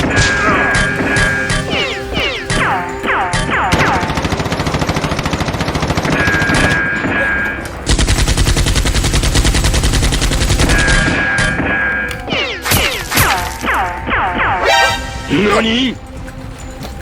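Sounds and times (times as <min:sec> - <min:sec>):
automatic gunfire: 0:03.3 - 0:11.7.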